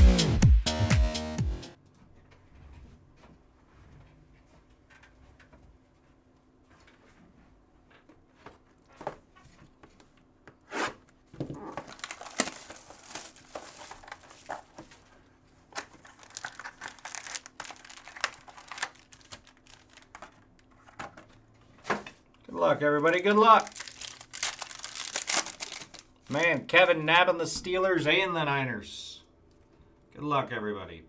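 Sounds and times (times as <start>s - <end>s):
plastic wrapping crackling: 11.6s - 21.2s, 22.6s - 26.7s.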